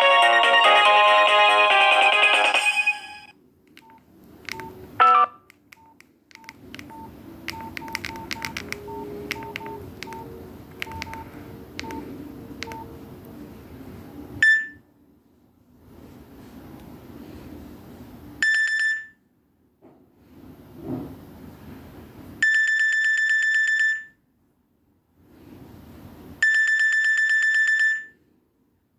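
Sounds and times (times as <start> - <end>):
polyphonic phone ringtone: 0.0 - 3.3, 4.6 - 5.4, 7.5 - 12.9, 22.5 - 24.2, 26.4 - 28.2
keypad beeps: 3.8 - 12.9.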